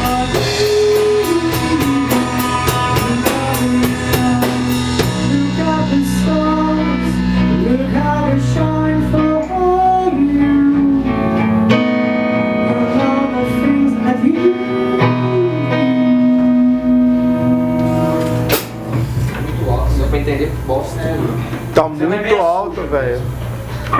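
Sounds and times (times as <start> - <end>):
loud bass-heavy music with singing: 0.0 - 11.5.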